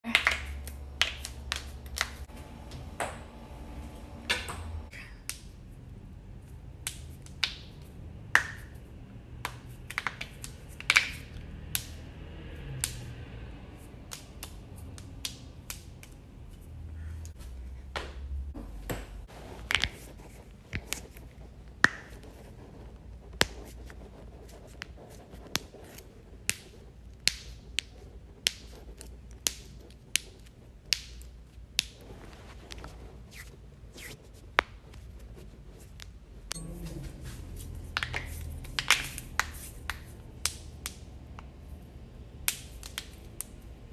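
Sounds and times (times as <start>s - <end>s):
low hum: 0.6s - 6.8s, 36.4s - 38.7s.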